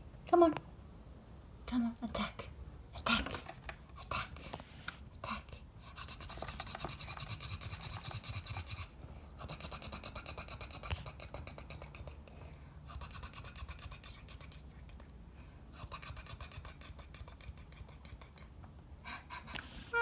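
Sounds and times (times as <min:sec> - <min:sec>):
cockatiel making raspy pulsing noise: 0:05.2 - 0:12.3, 0:12.9 - 0:14.6, 0:15.7 - 0:20.0.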